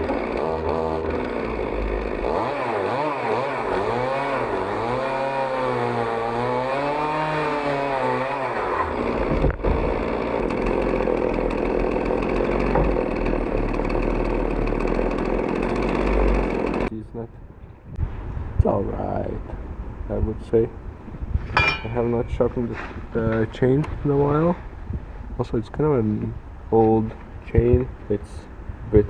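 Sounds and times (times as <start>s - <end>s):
chainsaw cutting through log: 0.0s - 16.9s.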